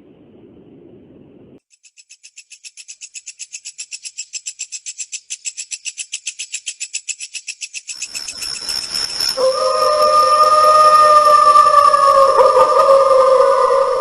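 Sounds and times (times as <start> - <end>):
steady eerie tone: 8.0 - 14.0.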